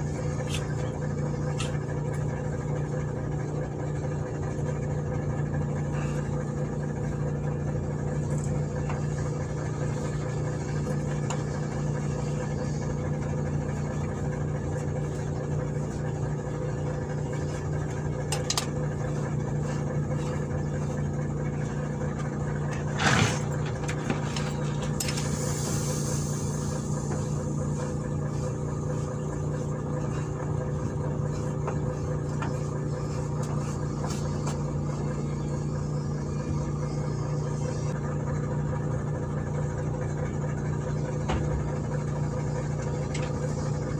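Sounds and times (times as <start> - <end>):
engine idling: 0.0 - 43.9.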